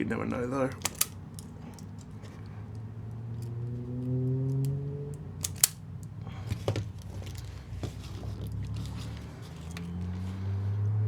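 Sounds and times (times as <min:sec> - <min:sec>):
small metal parts clicking: 0:00.6 - 0:07.6.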